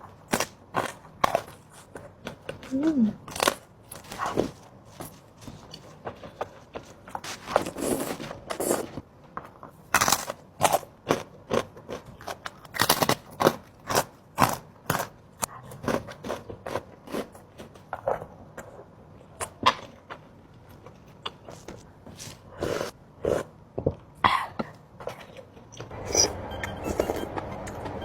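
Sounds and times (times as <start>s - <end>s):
person chewing: 0.1s - 9.0s, 9.9s - 18.8s, 24.6s - 28.0s.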